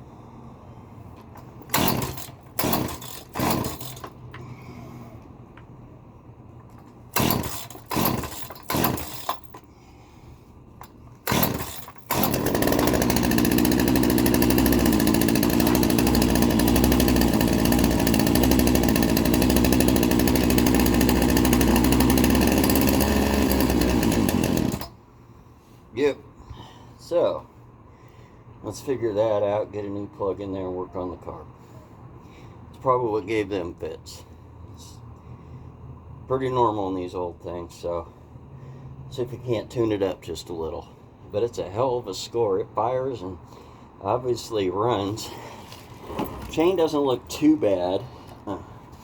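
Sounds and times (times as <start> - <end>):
chainsaw starting attempts: 1.6 - 4.5, 7.1 - 9.7, 11.2 - 25.0
chainsaw engine running: 1.7 - 4.1, 7.2 - 9.6, 11.3 - 24.9.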